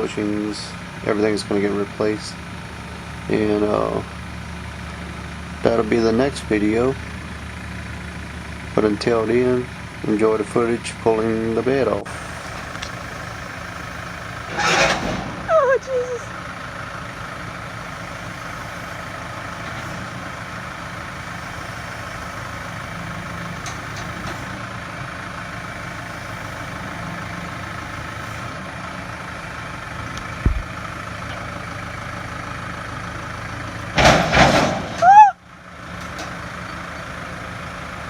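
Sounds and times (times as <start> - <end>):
tractor engine running: 0.0 - 38.0
loud clatter: 14.3 - 15.5, 33.9 - 35.0.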